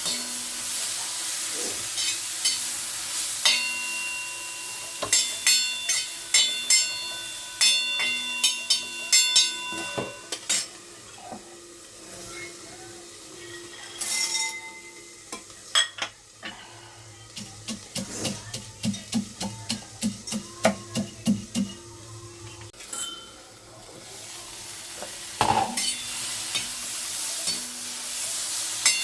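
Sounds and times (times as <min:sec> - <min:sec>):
metal spoon clanking in pan: 0:00.0 - 0:00.5, 0:03.4 - 0:10.8, 0:13.7 - 0:16.6, 0:22.8 - 0:23.4, 0:25.4 - 0:27.9, 0:28.7 - 0:29.0
light sizzle: 0:00.0 - 0:29.0.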